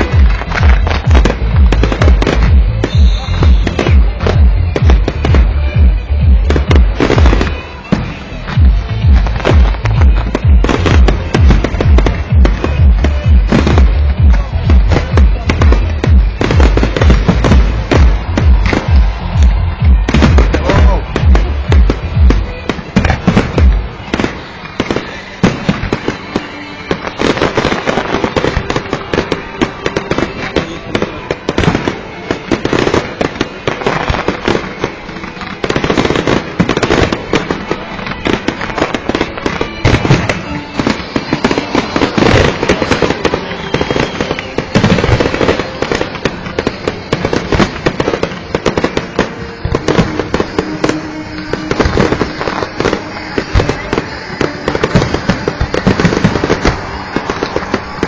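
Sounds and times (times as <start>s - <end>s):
fireworks bangs and crackles: 0.0s - 58.0s.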